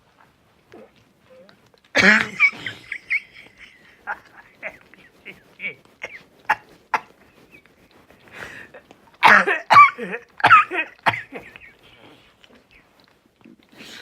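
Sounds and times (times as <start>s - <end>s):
person sneezing: 2.0s - 2.9s, 8.3s - 12.1s
person inhaling: 8.2s - 8.8s.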